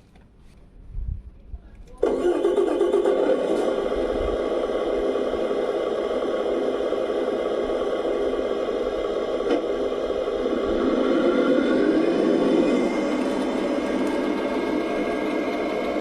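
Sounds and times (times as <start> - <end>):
model machine mechanical hum: 1.8 - 16.0.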